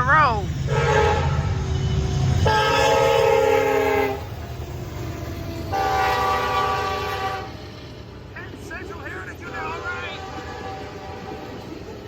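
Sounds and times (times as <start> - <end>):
passing train rumble: 0.0 - 12.0
locomotive air horn blasts: 0.7 - 1.6, 2.4 - 4.3, 5.7 - 7.6, 9.8 - 11.5.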